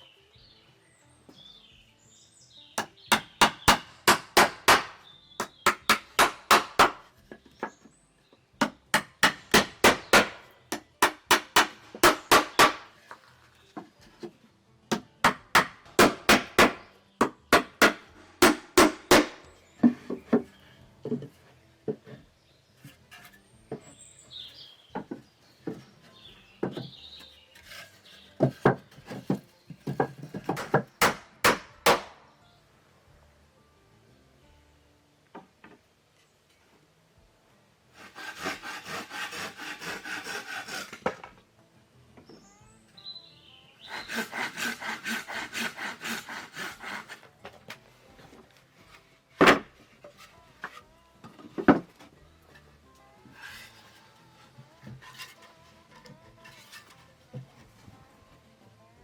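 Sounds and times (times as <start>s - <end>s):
hammer striking wood: 2.8s - 7.8s, 8.6s - 13.0s, 14.9s - 20.5s, 28.4s - 32.2s, 49.3s - 49.9s.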